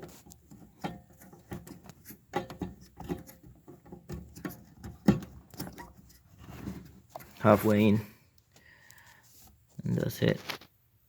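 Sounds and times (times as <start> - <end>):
plastic clicks and scrapes of bulb: 0.0 - 7.4.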